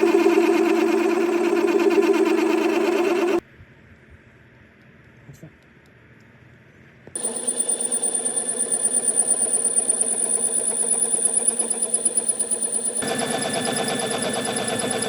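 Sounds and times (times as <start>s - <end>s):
power tool whining and rattling: 0.0s - 3.4s, 7.2s - 15.0s.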